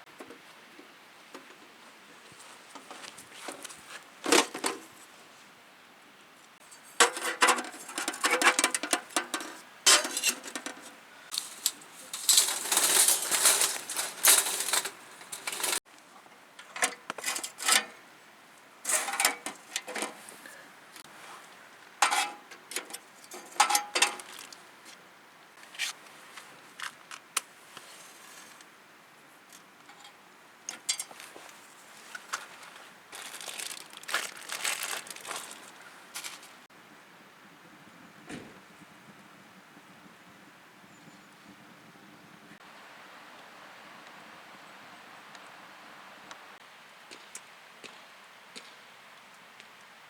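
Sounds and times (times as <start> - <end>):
small objects clicking and clinking: 11.3 - 15.8.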